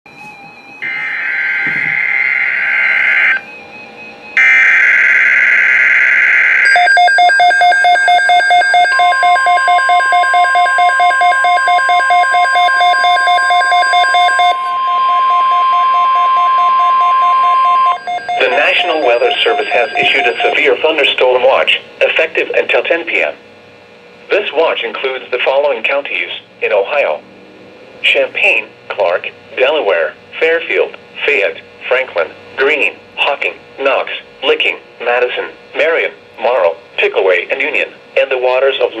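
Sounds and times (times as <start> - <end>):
long steady attention tone: 0.4 - 23.0
receiver alarm beeps: 6.6 - 21.0
warbling digital data bursts: 17.8 - 20.8.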